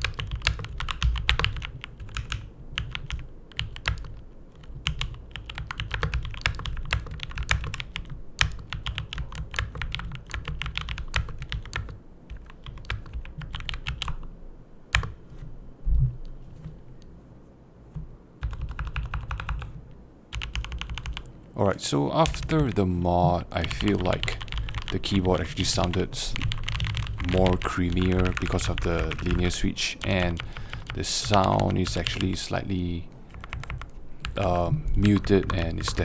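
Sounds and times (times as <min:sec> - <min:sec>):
mechanical keyboard typing: 0:00.0 - 0:14.2, 0:18.4 - 0:21.3, 0:23.6 - 0:32.4, 0:33.3 - 0:36.0.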